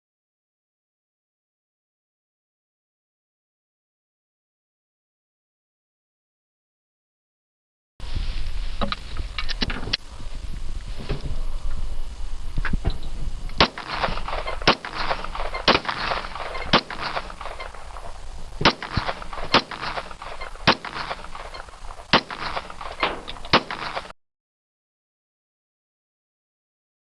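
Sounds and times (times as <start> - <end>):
pistol shots with echo: 13.6 - 24.1.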